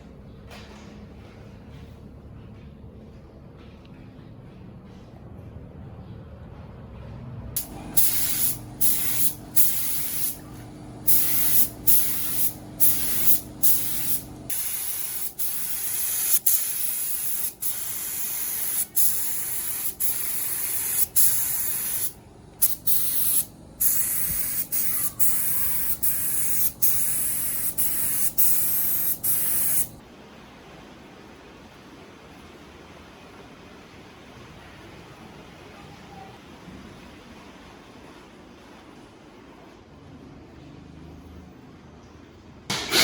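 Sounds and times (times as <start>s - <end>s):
low steady hum: 0.0s - 35.9s
spray gun hissing: 7.6s - 30.0s.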